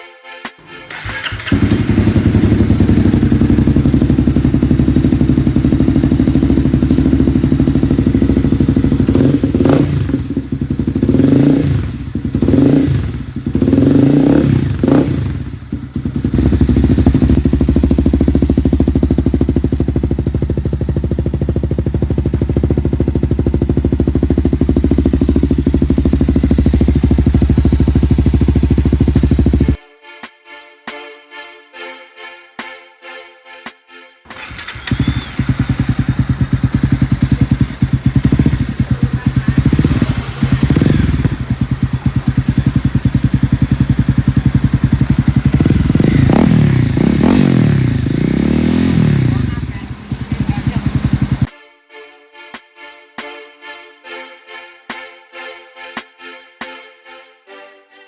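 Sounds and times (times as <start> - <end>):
motorcycle engine idling and revving: 0.9 - 29.8, 34.3 - 51.5.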